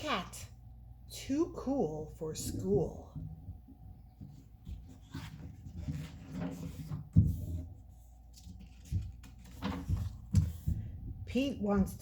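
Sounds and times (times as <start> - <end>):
book pages turning: 4.3 - 10.8.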